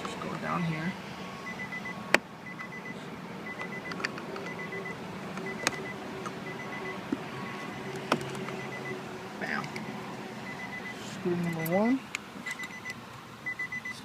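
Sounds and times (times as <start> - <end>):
electronic chime beeping: 1.4 - 3.9, 4.5 - 7.9, 8.6 - 9.6, 10.4 - 11.9.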